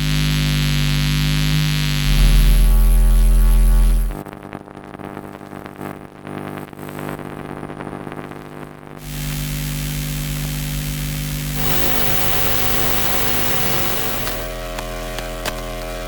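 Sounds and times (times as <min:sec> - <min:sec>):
electrical hum with overtones: 0:00.0 - 0:04.2, 0:09.0 - 0:16.0
loud electrical buzz with hiss: 0:00.0 - 0:04.2, 0:09.0 - 0:16.0
fluttering crackle: 0:11.6 - 0:15.8.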